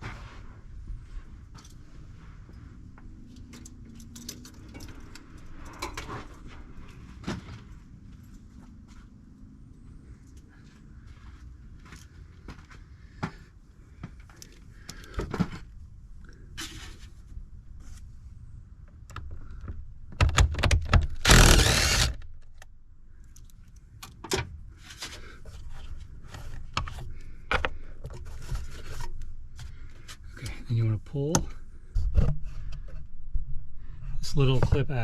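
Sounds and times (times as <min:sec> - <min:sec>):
cordless impact wrench: 0:21.1 - 0:22.4.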